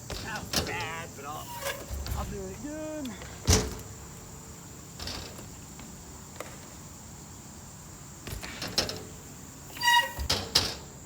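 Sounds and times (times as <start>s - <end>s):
bike squeak: 0.0s - 2.4s, 9.6s - 10.9s
bike knocking on concrete: 0.0s - 6.9s, 8.2s - 10.9s.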